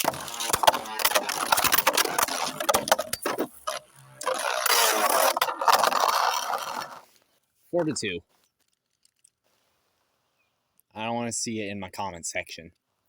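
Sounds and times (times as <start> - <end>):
spinning tops scraping and whirring: 0.0 - 7.1.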